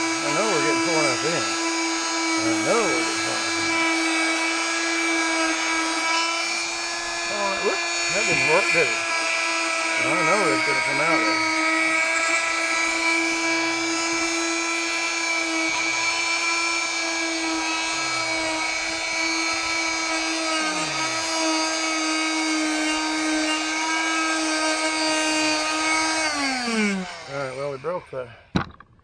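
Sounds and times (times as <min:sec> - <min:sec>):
oscillating multi-tool buzzing: 0:00.0 - 0:29.0.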